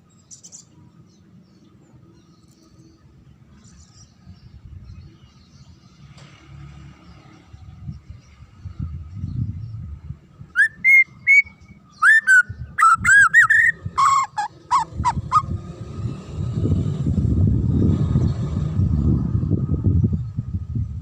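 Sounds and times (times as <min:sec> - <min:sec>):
bird whistling song: 0:10.5 - 0:15.5.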